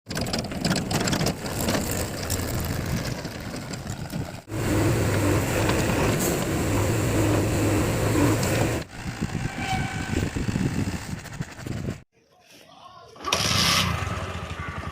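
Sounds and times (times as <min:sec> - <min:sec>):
diesel engine running: 0:01.5 - 0:12.0.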